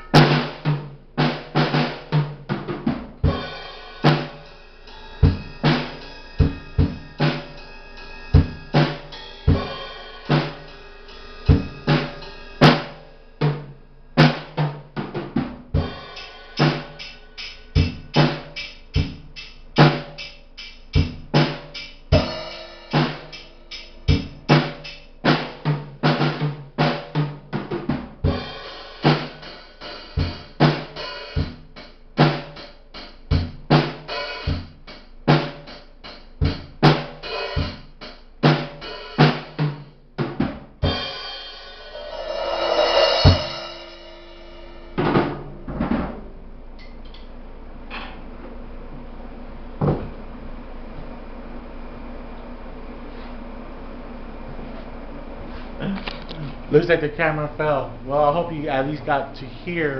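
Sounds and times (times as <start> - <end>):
cymbals ringing: 0.0 - 0.6, 3.3 - 13.4, 15.9 - 20.9, 21.8 - 25.2, 40.9 - 45.0
drum kit groove: 0.0 - 46.4, 55.5 - 59.9.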